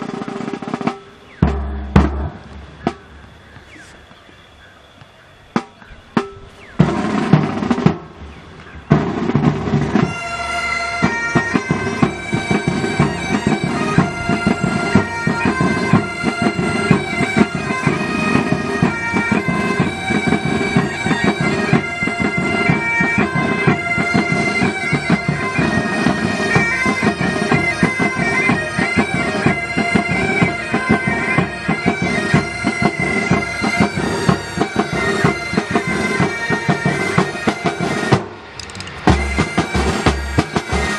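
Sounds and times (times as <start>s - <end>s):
pipe band drums beating: 0.0s - 3.9s, 5.5s - 40.9s
bagpipes playing over drone: 9.0s - 40.9s.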